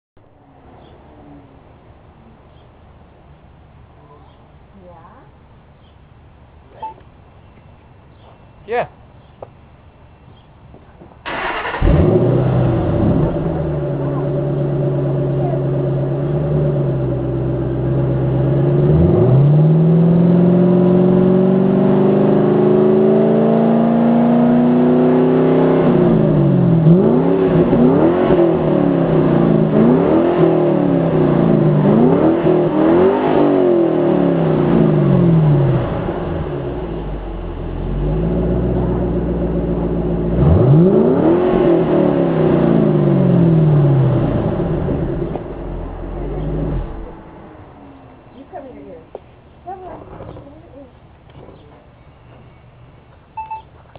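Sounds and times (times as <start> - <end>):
car engine idling and revving: 9.2 - 51.8
car engine starting: 11.1 - 53.6.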